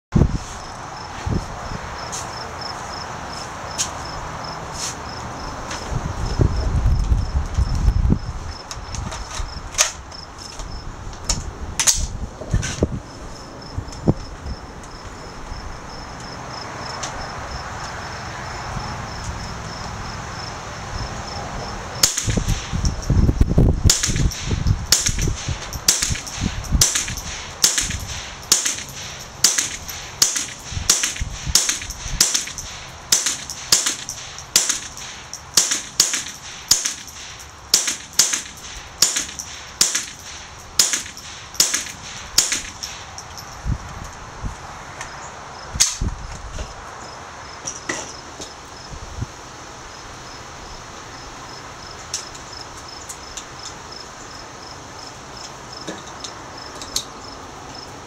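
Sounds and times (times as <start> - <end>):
rifle shots cracking: 22.0 - 22.8, 23.9 - 43.1.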